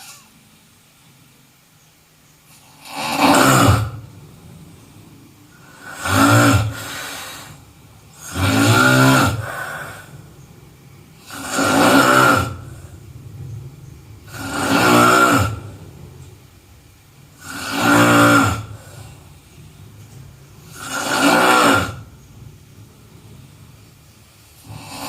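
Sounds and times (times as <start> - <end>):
person snoring: 2.5 - 4.2, 5.5 - 10.2, 11.2 - 13.0, 14.2 - 16.0, 17.3 - 19.4, 20.6 - 22.1, 24.6 - 25.0.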